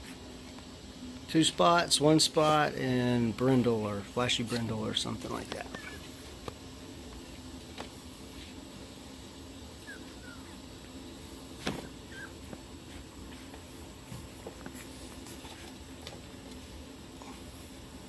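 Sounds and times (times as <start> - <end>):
steady low hum: 0.0 - 18.0
puppies squeaking: 5.6 - 6.3, 9.8 - 10.7, 11.8 - 12.5.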